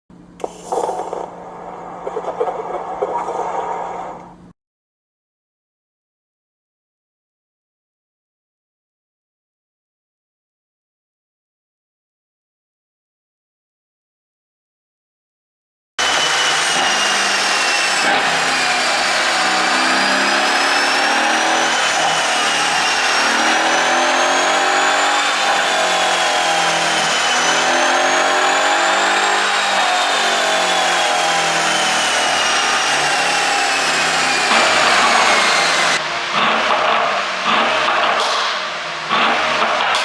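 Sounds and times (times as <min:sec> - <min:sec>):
car engine running: 0:16.0 - 0:37.9.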